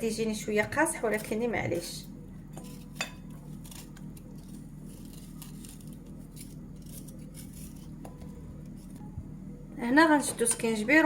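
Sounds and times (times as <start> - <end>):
steady low hum: 0.0 - 11.0
scraping ginger skin: 0.8 - 9.0.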